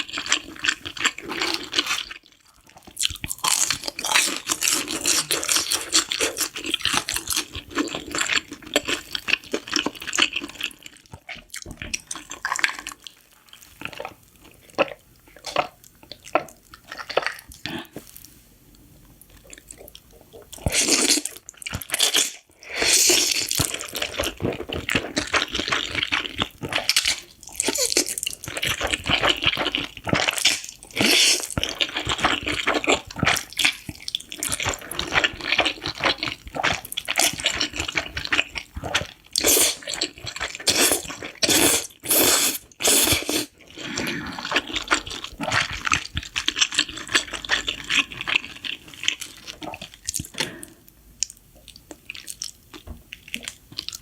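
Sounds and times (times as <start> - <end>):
chewing: 0.0 - 54.0
noodles being slurped: 20.5 - 50.7.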